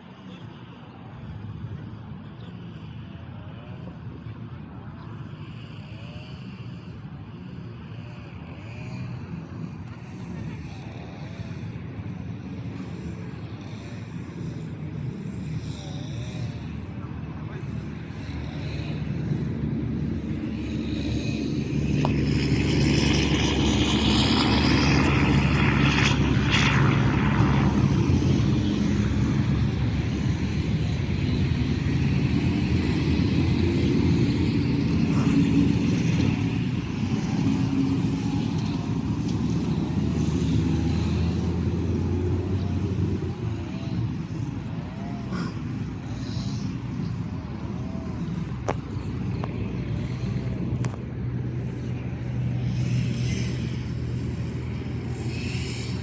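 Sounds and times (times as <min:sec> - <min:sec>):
engine drone: 0:00.0 - 0:56.0.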